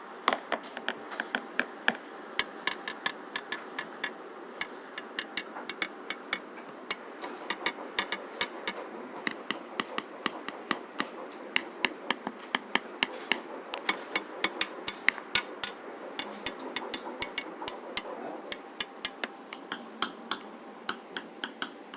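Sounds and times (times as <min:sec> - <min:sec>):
steady background noise: 0:00.0 - 0:21.9
rapid light tapping: 0:00.3 - 0:21.9.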